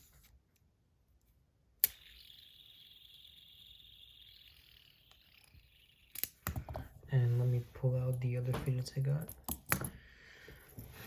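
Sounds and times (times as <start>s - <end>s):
fidget spinner whine: 1.8s - 6.5s
fidget spinner click: 1.8s - 6.6s.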